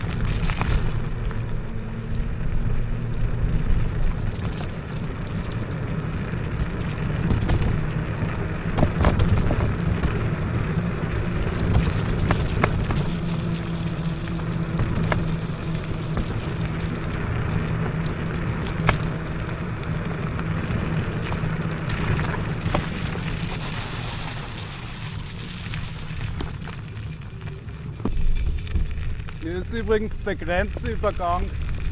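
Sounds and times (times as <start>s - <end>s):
tyres rumbling on rough track: 0.0s - 31.9s
sharp knocks from bumps: 8.7s - 10.2s.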